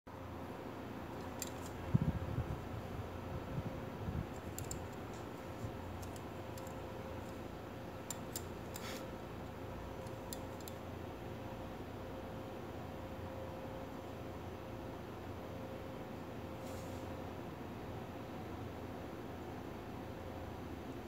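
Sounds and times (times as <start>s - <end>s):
faint steady hum: 0.1s - 21.0s
multitool clicks: 4.4s - 5.2s, 8.0s - 8.8s.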